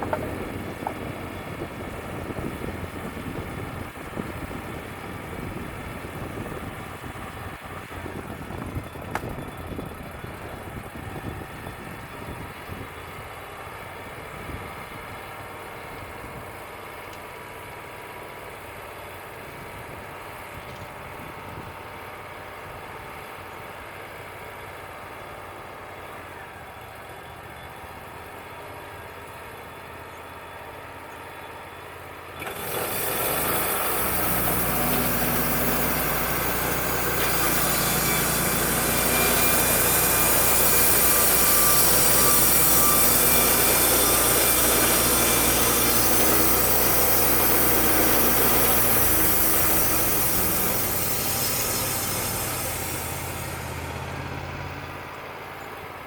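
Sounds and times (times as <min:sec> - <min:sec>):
band sawmill cutting log: 0:00.0 - 0:14.6, 0:32.1 - 0:56.0.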